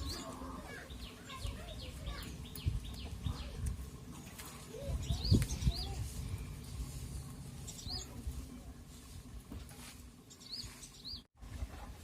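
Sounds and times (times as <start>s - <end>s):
low outdoor rumble: 0.0s - 12.0s
bird chirping: 4.7s - 8.2s, 10.2s - 11.3s.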